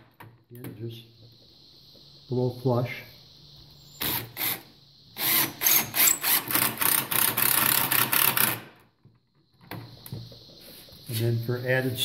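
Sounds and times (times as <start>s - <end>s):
power drill driving screw: 3.9s - 8.8s.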